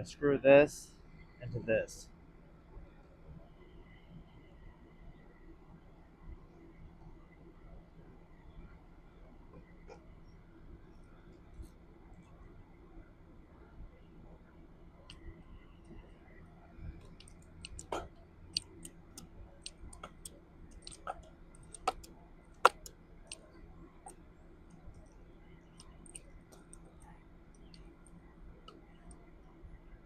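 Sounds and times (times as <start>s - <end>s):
clicks and taps of parts: 17.1s - 24.2s.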